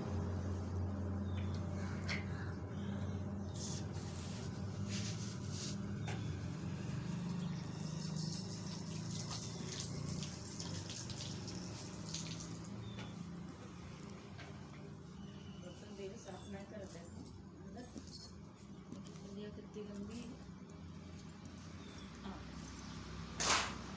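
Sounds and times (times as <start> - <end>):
steady low hum: 0.0 - 8.9.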